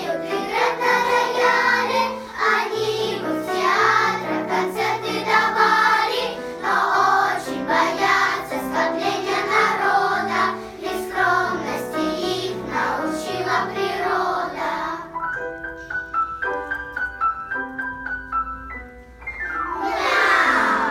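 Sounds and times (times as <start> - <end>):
children's choir singing: 0.0 - 15.2, 19.6 - 20.9
instrumental accompaniment: 0.0 - 20.9.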